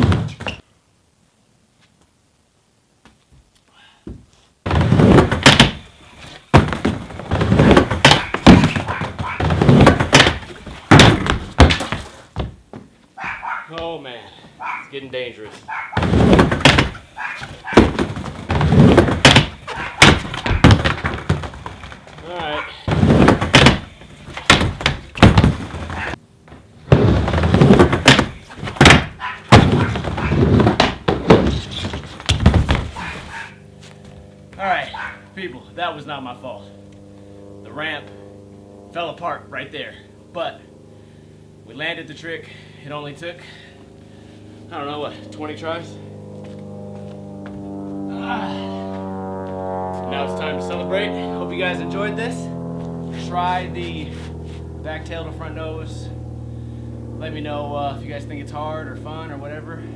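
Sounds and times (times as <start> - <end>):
skateboard wheels rumbling: 0.0 - 0.6, 4.7 - 12.9, 15.6 - 34.6
skateboard knocking on ramp: 4.1 - 5.9, 6.5 - 12.9, 16.0 - 33.2.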